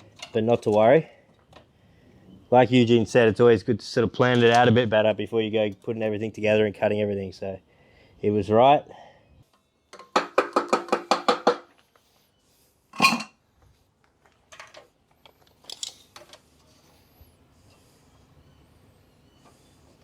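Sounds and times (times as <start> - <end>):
metal clatter: 13.0 - 13.3.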